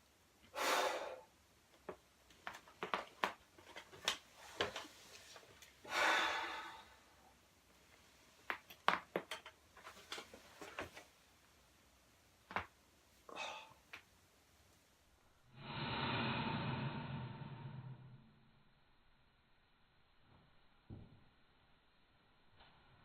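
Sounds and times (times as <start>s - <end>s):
rushes of noise: 15.5s - 18.5s.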